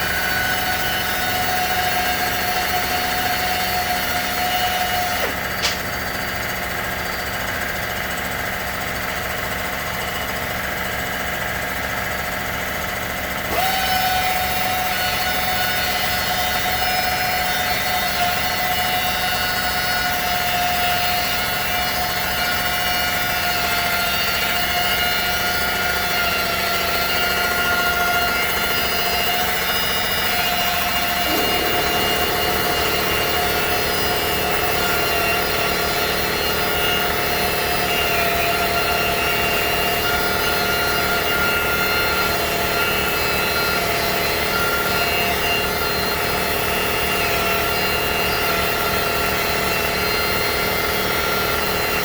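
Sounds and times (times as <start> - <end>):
machine tool whining: 0.0 - 8.9, 13.4 - 52.0
short click: 5.2 - 5.9.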